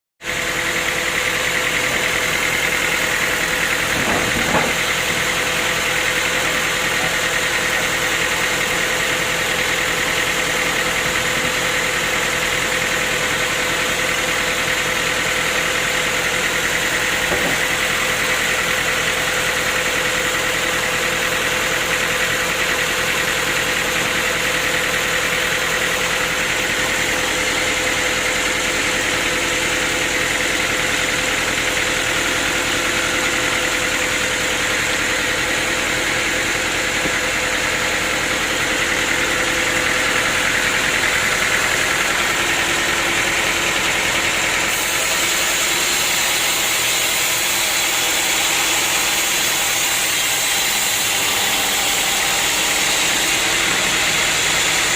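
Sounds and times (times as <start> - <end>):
sawmill machinery hum and whine: 0.2 - 54.9
brief knock: 17.3 - 17.6.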